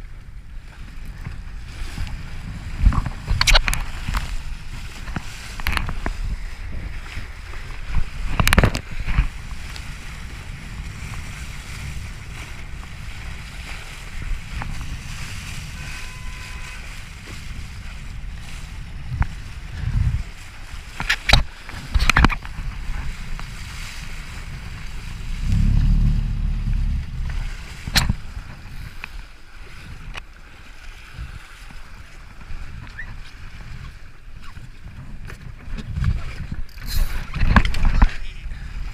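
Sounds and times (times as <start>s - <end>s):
wind on microphone: 0.0s - 38.9s
water sloshing: 20.8s - 29.3s.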